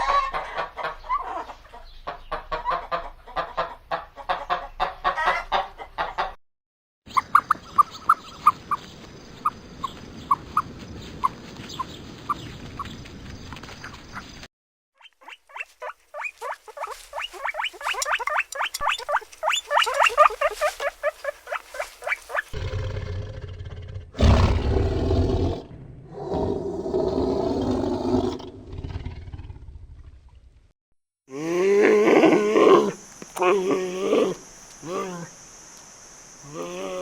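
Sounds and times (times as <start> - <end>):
rapid high chirping calls: 15.0 - 22.6
rough low animal calls: 15.2 - 29.6, 31.3 - 35.4.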